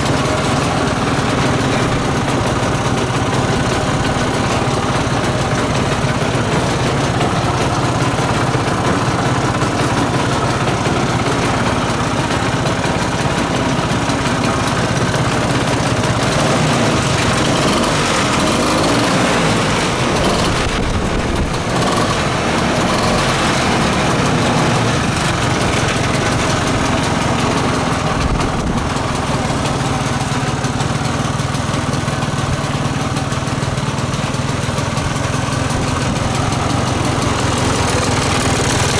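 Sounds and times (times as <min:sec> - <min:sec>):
two-stroke engine running: 0:00.0 - 0:38.9.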